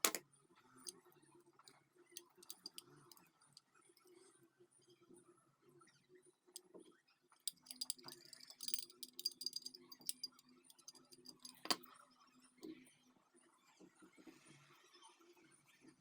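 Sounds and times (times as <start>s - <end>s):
lighter parts clinking: 2.2s - 2.8s, 7.5s - 11.8s.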